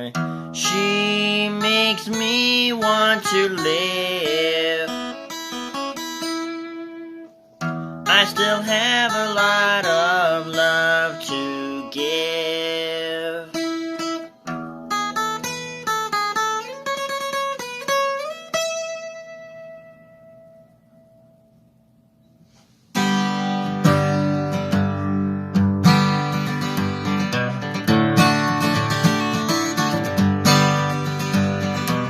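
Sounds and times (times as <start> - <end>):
loud guitar strumming: 0.0 - 21.3, 23.0 - 32.0
acoustic guitar picked notes: 0.0 - 32.0.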